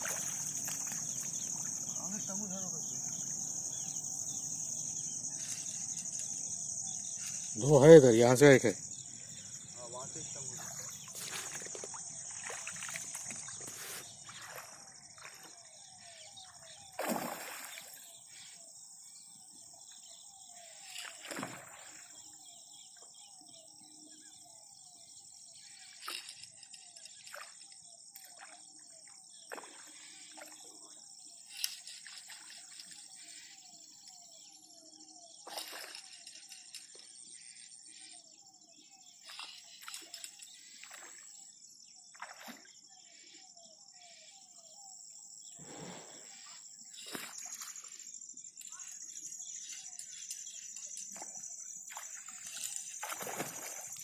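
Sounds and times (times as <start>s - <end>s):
water splashes: 0.0s - 2.1s, 10.1s - 15.6s, 17.0s - 18.1s, 21.1s - 22.1s, 35.5s - 36.0s, 42.2s - 42.7s, 51.9s - 54.0s
faint chirping call: 0.0s - 54.0s
high insect drone: 0.0s - 54.0s.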